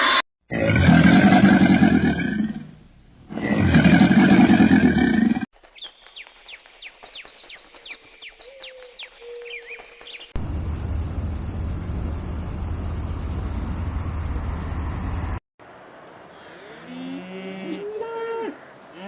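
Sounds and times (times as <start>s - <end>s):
large animal roaring: 0.5s - 2.6s
high falling chirps: 10.4s - 15.4s.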